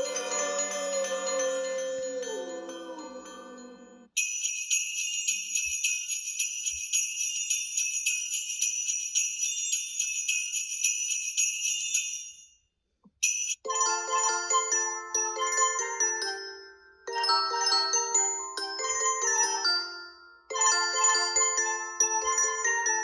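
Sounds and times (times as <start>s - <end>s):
jingling ringtone: 0.0s - 12.5s.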